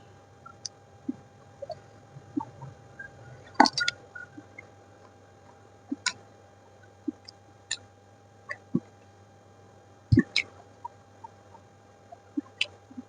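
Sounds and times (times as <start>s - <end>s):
wet mouth clicks: 10.2s - 10.5s.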